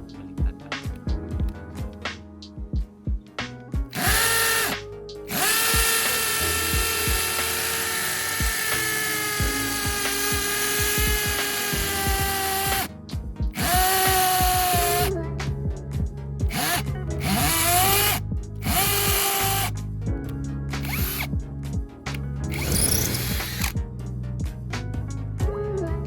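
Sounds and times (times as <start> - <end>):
hammer drill boring into concrete: 3.9 - 12.9, 13.6 - 15.1, 16.5 - 19.7, 20.8 - 21.3, 22.5 - 23.8.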